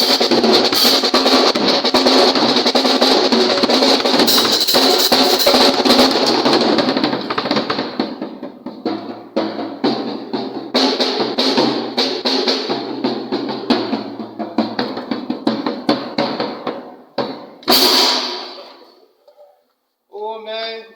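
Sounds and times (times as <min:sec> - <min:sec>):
cymbal crashes: 0:00.0 - 0:07.0, 0:17.7 - 0:18.6
snare drum rolls and hits: 0:00.0 - 0:18.8.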